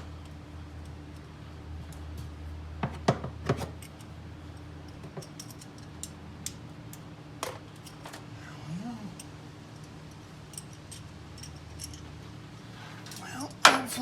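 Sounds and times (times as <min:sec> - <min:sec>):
steady low hum: 0:00.0 - 0:14.0
metal tools knocking and clinking: 0:07.4 - 0:08.2, 0:13.0 - 0:14.0.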